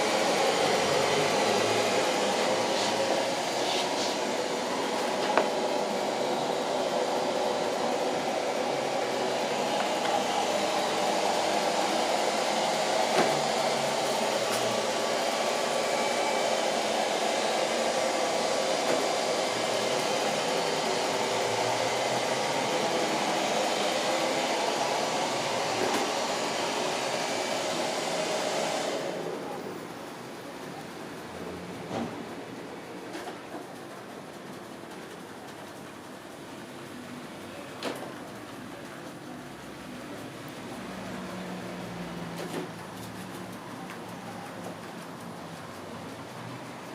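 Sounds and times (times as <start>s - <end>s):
robot vacuum cleaner running: 0.0s - 46.9s.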